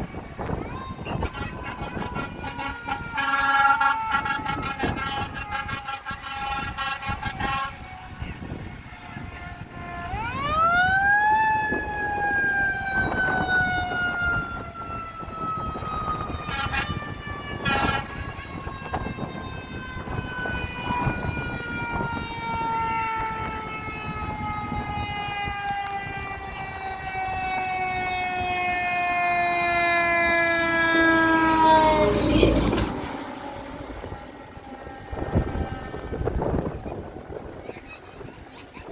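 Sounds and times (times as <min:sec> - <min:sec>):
mechanical siren wailing: 0:00.0 - 0:37.6
truck engine: 0:14.6 - 0:20.8, 0:27.1 - 0:38.9.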